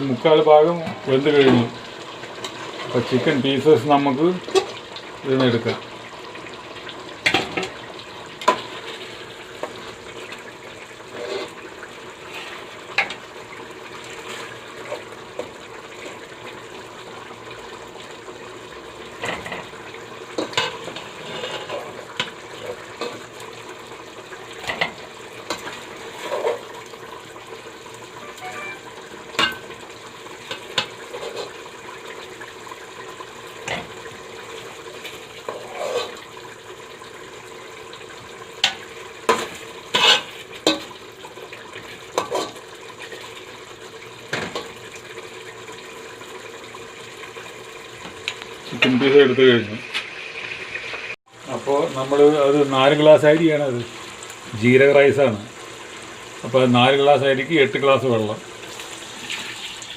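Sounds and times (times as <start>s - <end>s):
spoon scraping cooking pot: 11.1s - 13.1s, 20.4s - 23.3s, 35.4s - 36.2s, 39.3s - 40.8s.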